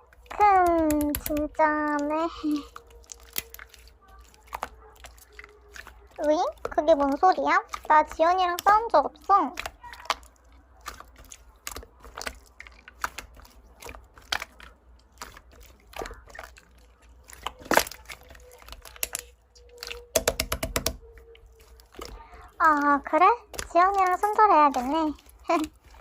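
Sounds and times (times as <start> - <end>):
typing clicks: 18.5 - 21.2.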